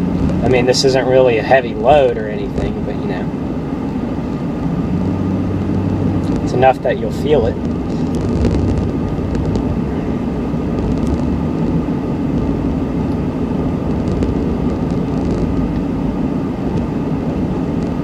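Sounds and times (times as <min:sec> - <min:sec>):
engine running under load: 0:00.0 - 0:18.0
road noise: 0:00.0 - 0:18.0.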